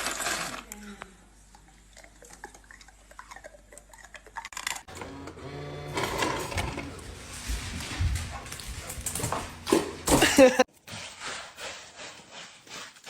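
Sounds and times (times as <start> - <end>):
dispenser motor whirring: 4.9 - 10.4.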